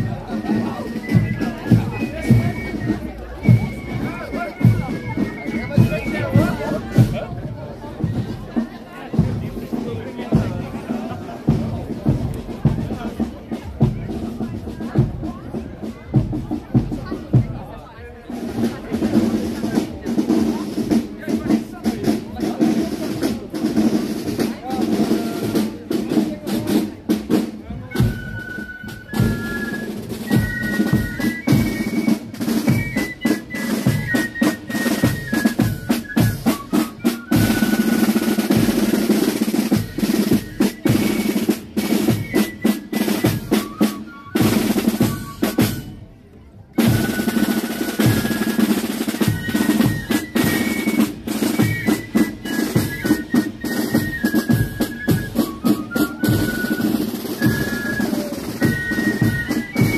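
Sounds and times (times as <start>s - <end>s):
marching band playing: 0.0s - 59.9s
drum roll: 18.3s - 45.9s, 46.7s - 59.9s.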